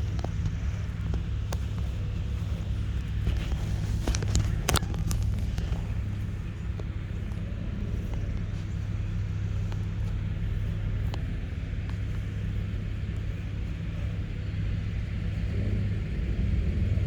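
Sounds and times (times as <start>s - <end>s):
faint ticks: 0.0s - 15.8s
engine idling: 0.0s - 17.0s.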